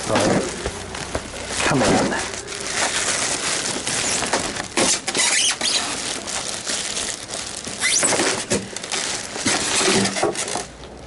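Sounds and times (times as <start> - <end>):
styrofoam squeaking on cardboard: 2.3 - 10.6.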